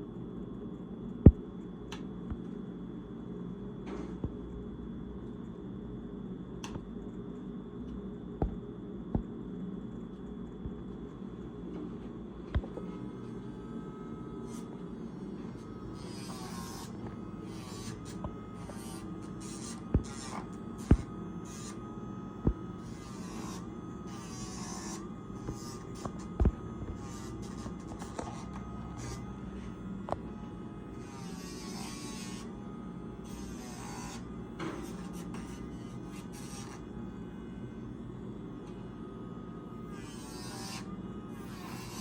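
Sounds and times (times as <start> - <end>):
small electric motor humming: 12.5 - 42.0.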